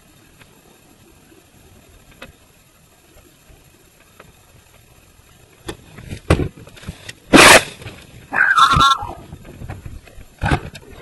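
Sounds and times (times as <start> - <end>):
laptop crashing down: 7.3 - 8.0.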